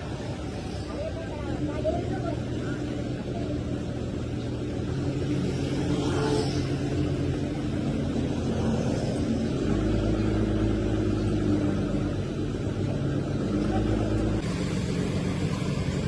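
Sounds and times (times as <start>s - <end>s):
truck engine running: 6.8s - 16.0s.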